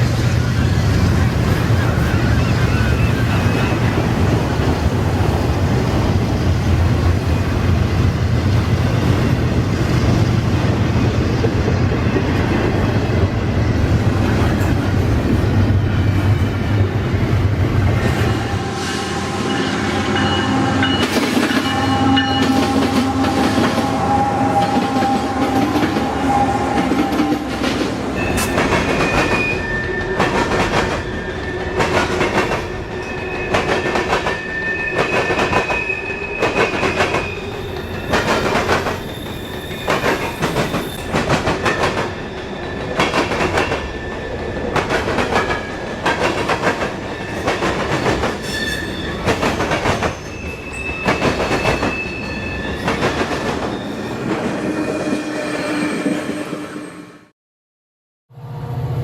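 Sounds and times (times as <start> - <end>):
train low rumble: 0.0 - 19.3.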